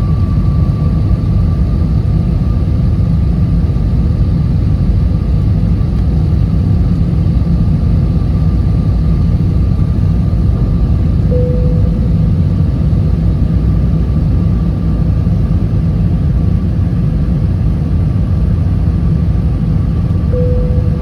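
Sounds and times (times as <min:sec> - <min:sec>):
engine and airflow rumble: 0:00.0 - 0:21.0
faint steady whine: 0:11.2 - 0:14.1, 0:20.3 - 0:21.0
brief higher tone: 0:11.3 - 0:13.4, 0:20.4 - 0:21.0.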